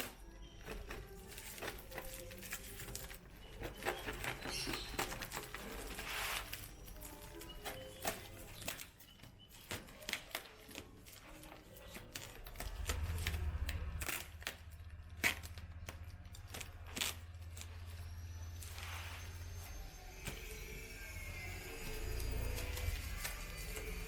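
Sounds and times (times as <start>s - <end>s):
packaging rustling: 0.0s - 21.0s
low steady hum: 10.8s - 24.0s.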